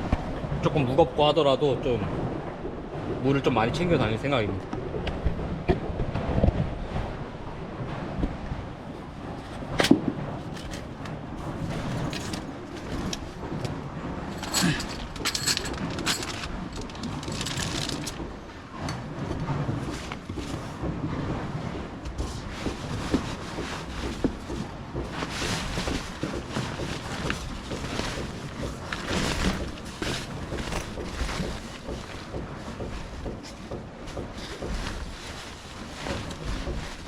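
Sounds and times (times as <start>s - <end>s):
camping gear rustling: 9.1s - 13.6s, 14.3s - 18.3s, 22.2s - 37.0s.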